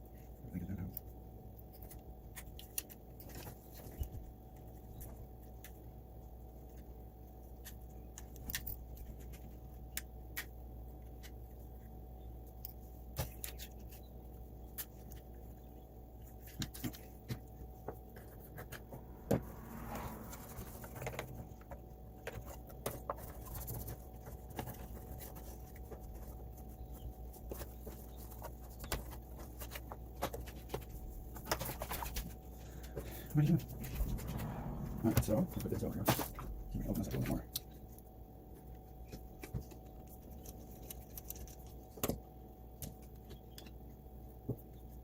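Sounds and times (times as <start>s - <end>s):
steady low hum: 0.0s - 45.0s
rustling scrape: 18.1s - 21.7s, 31.0s - 36.4s.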